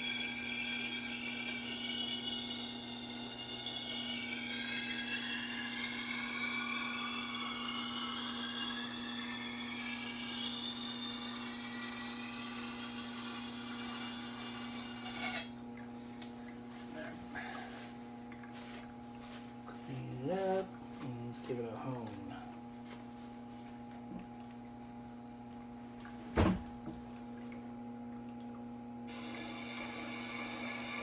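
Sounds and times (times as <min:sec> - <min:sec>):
knife grinding on sharpener: 0:00.0 - 0:15.6.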